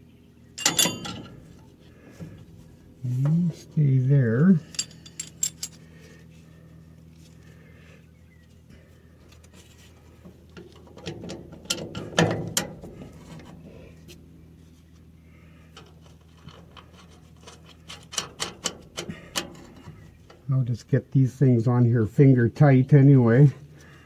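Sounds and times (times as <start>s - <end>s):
low hum: 0.2s - 8.4s
metal parts clicking and clinking: 0.6s - 1.8s, 4.4s - 6.0s
metal clunk: 0.6s - 2.8s.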